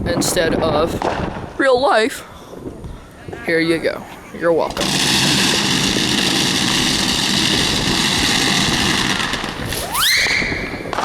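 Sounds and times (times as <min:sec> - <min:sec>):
fireworks crackling hiss: 0:04.6 - 0:11.0
rising firework whistle: 0:04.7 - 0:11.0.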